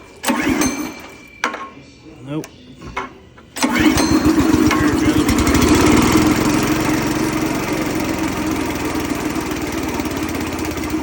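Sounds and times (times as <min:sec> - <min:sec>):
small gas engine running: 0:03.6 - 0:11.0.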